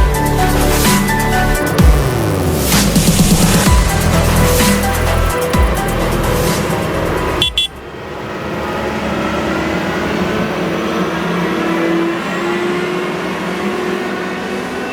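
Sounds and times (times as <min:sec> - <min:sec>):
music: 0:00.0 - 0:07.9
farm machinery engine droning: 0:00.4 - 0:14.9.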